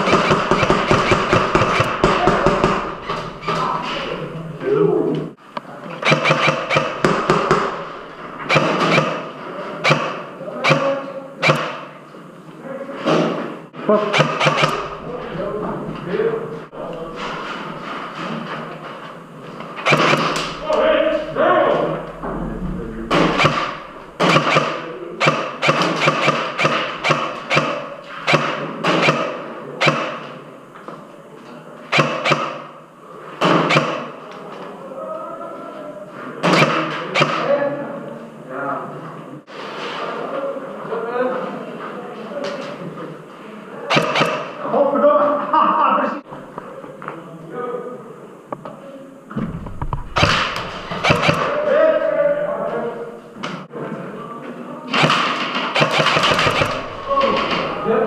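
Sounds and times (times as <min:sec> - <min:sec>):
airsoft guns firing: 0:00.0 - 0:04.1, 0:06.0 - 0:12.0, 0:14.1 - 0:15.4, 0:19.8 - 0:21.3, 0:23.1 - 0:30.2, 0:32.0 - 0:32.7, 0:43.9 - 0:44.6, 0:49.9 - 0:51.7, 0:55.0 - 0:58.0.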